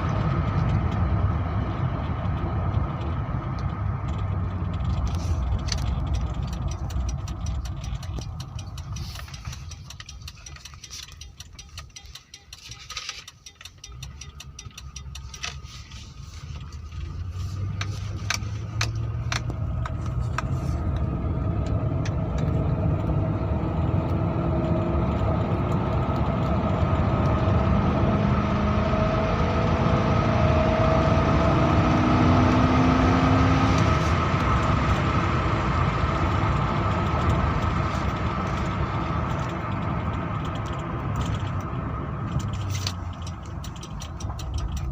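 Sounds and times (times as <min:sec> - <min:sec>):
car engine running: 0:00.0 - 0:44.9
scattered clicks: 0:02.2 - 0:17.2, 0:36.5 - 0:44.9.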